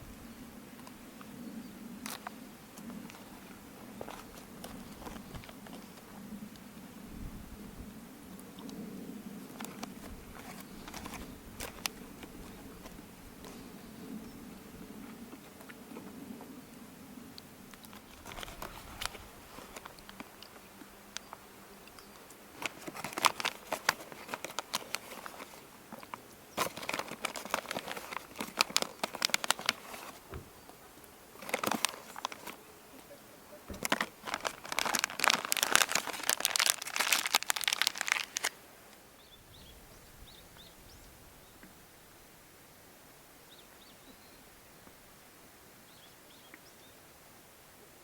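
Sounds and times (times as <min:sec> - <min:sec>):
crinkling and rustling: 0:02.1 - 0:06.1, 0:09.6 - 0:13.6, 0:17.7 - 0:38.6.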